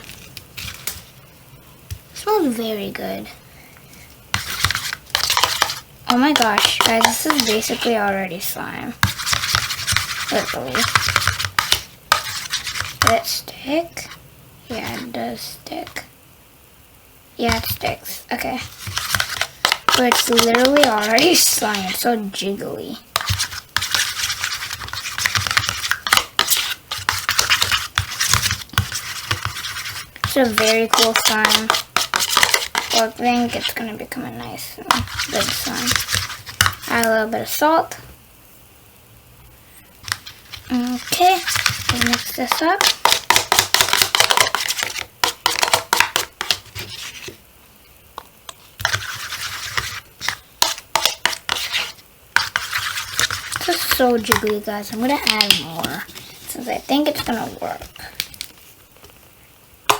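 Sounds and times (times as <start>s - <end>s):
slime stirred scraping in bowl: 4.3s - 13.4s, 14.0s - 16.0s, 17.4s - 22.5s, 23.1s - 37.2s, 40.0s - 47.4s, 48.4s - 58.5s.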